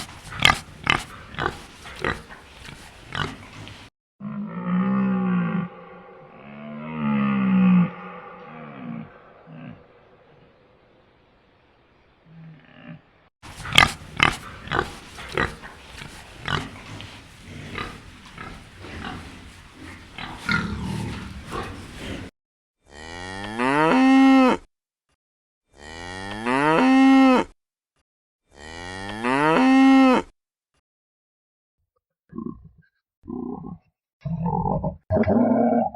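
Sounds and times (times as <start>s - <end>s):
cow mooing: 4.2s - 10.0s.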